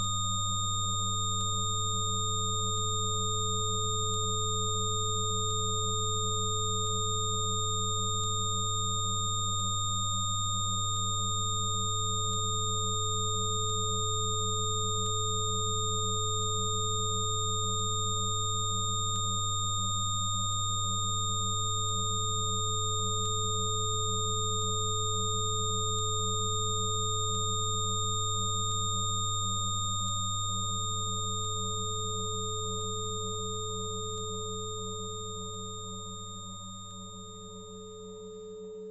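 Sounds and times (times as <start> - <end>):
high pure sine tones: 21.2 - 38.9.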